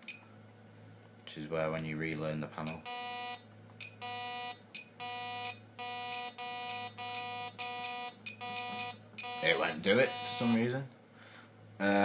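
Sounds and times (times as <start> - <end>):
intruder alarm beeping: 2.7 - 10.6.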